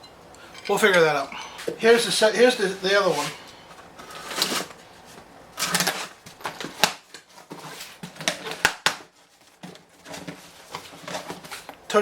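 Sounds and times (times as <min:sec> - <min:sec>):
packaging rustling: 0:03.9 - 0:11.7.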